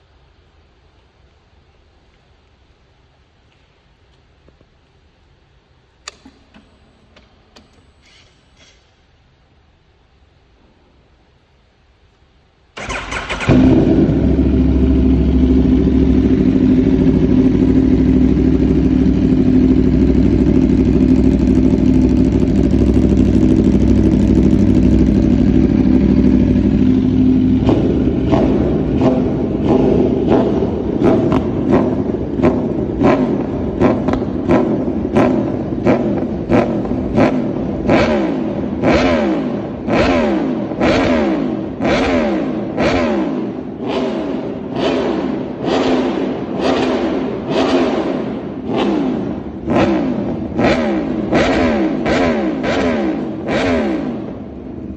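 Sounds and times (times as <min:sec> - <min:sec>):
engine revving in throttle blips: 0:12.8 - 0:54.9
motorcycle engine idling: 0:12.8 - 0:54.9
motorcycle engine starting: 0:12.8 - 0:54.9.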